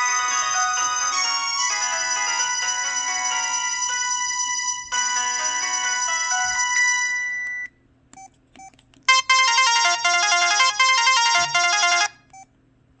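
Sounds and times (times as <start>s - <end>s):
electronic ringtone melody: 0.0s - 7.7s, 9.1s - 12.2s
phone key beeps: 7.4s - 12.4s.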